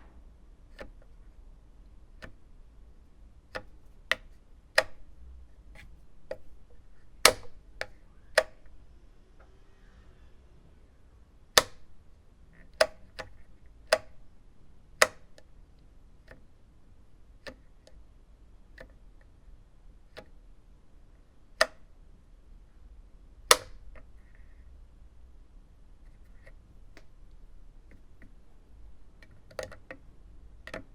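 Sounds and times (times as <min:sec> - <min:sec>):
low hiss: 0:00.0 - 0:12.6
light switch clicks: 0:07.2 - 0:08.7, 0:11.6 - 0:11.9, 0:23.5 - 0:23.8.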